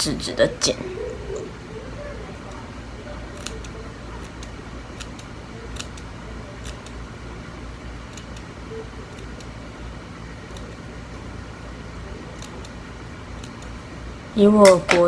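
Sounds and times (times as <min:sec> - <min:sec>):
steady low hum: 0:00.0 - 0:15.0
scissors snipping hair: 0:03.3 - 0:07.0, 0:08.1 - 0:09.6, 0:10.4 - 0:10.8, 0:12.3 - 0:12.8, 0:13.4 - 0:13.8.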